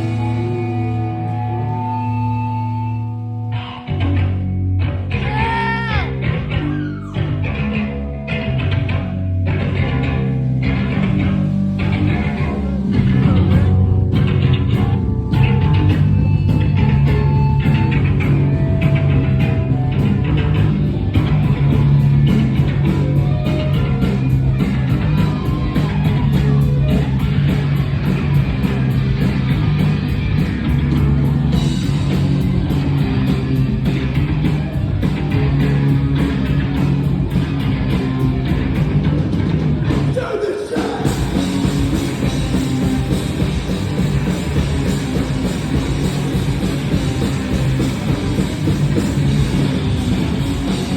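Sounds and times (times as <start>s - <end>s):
electric guitars: 0.0s - 50.9s
steady drum beat: 11.8s - 50.9s.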